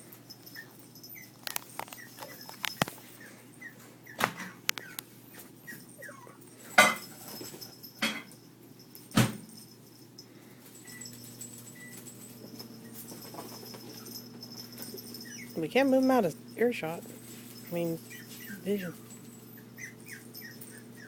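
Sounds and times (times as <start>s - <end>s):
cat toys knocking and clattering: 6.8s - 8.4s.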